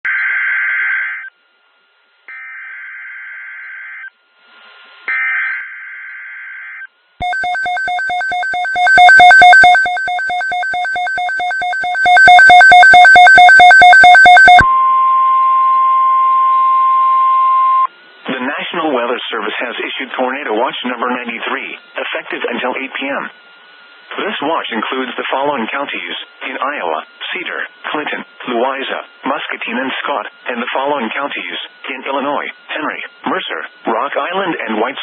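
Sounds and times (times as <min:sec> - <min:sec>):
pulsed electronic beeping: 0:07.2 - 0:14.8
steady single-pitch alert tone: 0:07.2 - 0:17.9.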